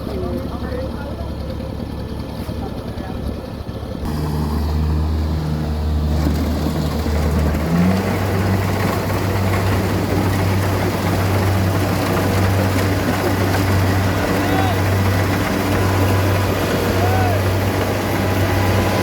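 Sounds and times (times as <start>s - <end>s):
diesel engine running: 0.0s - 19.0s
mechanical rush: 4.0s - 19.0s.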